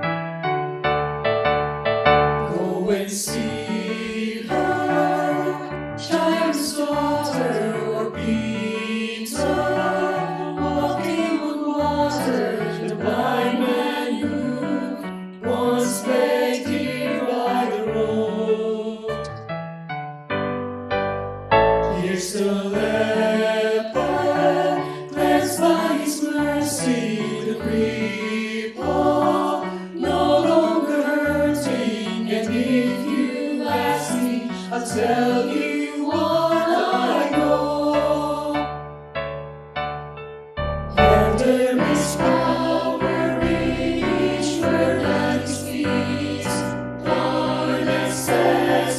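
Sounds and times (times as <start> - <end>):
choir singing worship song: 2.4 - 19.3, 21.8 - 38.8, 41.0 - 48.9
instrumental accompaniment chords: 19.2 - 22.2, 36.3 - 48.9.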